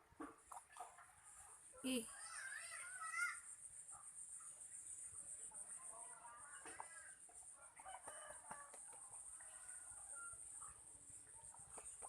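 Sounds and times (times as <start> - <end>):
chicken clucking: 6.4 - 12.0.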